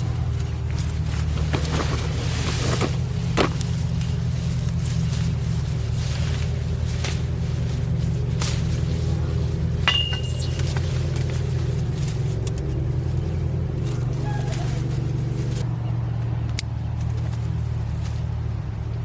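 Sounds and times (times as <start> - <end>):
low engine drone: 0.0 - 19.0.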